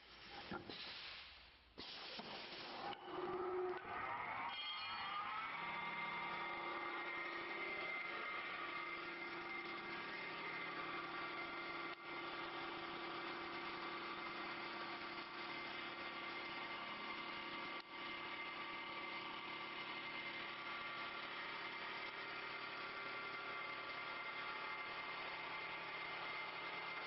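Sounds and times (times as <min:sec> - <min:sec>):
dense hiss: 0:00.0 - 0:03.0
wood lathe machine hum: 0:02.9 - 0:27.0.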